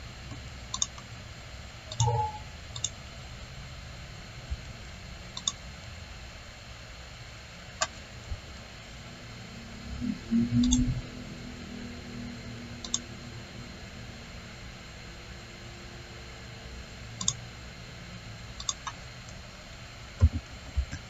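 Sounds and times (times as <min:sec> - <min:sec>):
computer mouse clicking: 0:00.7 - 0:01.0, 0:01.9 - 0:03.0, 0:05.4 - 0:05.6, 0:10.6 - 0:10.9, 0:12.8 - 0:13.0, 0:17.2 - 0:17.4, 0:18.6 - 0:19.4
brief low hum: 0:01.9 - 0:02.6, 0:09.5 - 0:14.0.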